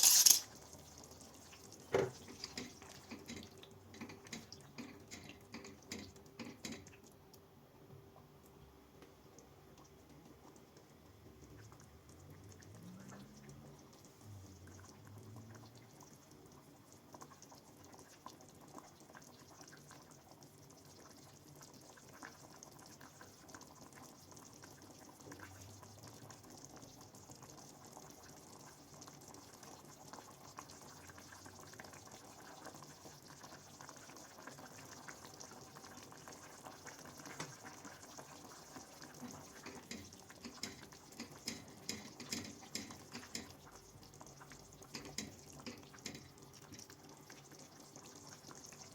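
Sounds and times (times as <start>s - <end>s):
soft steady hiss: 0.0s - 48.9s
light crackling ticks: 8.4s - 10.9s.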